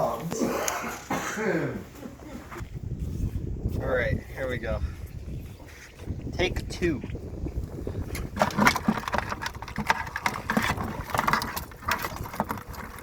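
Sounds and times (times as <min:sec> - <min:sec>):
tongs clicking and scraping: 0:08.2 - 0:13.0.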